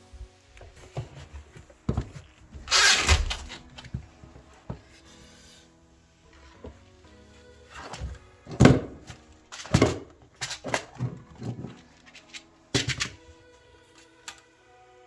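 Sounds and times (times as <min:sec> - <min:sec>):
background music: 0:00.0 - 0:15.0
hand tools knocking and clunking: 0:00.6 - 0:05.0, 0:07.7 - 0:13.3.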